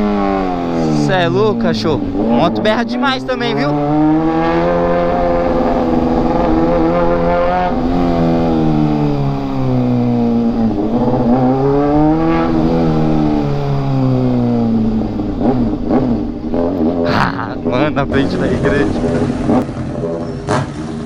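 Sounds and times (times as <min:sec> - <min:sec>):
loud motorcycle engine: 0:00.0 - 0:21.0.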